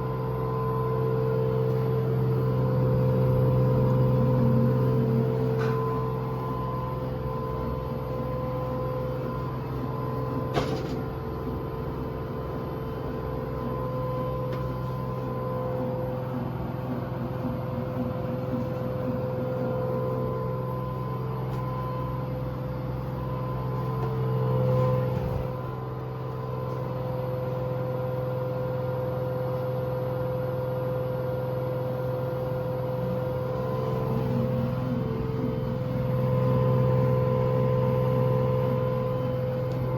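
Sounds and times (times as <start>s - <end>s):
washing machine drum spinning: 0.0s - 28.6s.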